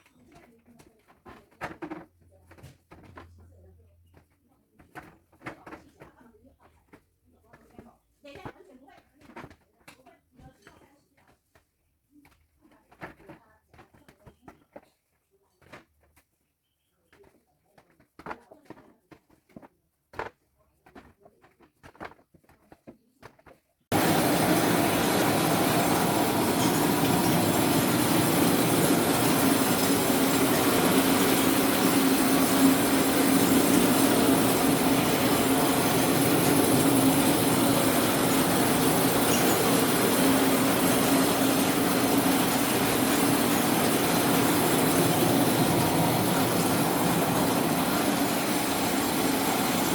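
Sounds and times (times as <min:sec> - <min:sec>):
low machine hum: 0:23.9 - 0:49.9
sorting machine rattling: 0:23.9 - 0:49.9.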